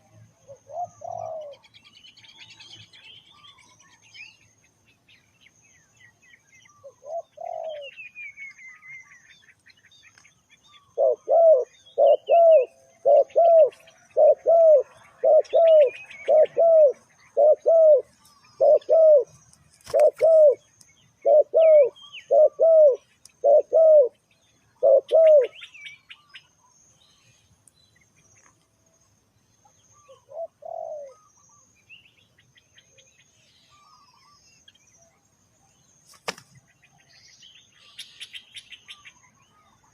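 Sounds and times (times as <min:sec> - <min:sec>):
dove cooing: 0:00.0 - 0:01.7, 0:06.8 - 0:08.0, 0:10.9 - 0:24.2, 0:24.8 - 0:25.7, 0:30.0 - 0:31.5
small birds chirping: 0:00.0 - 0:39.9.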